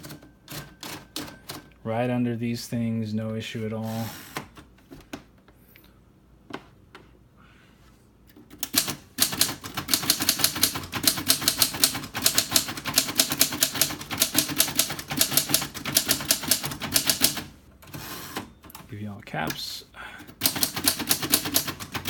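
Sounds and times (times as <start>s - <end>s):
typewriter typing: 0.0s - 1.7s, 8.4s - 18.9s, 20.3s - 22.0s.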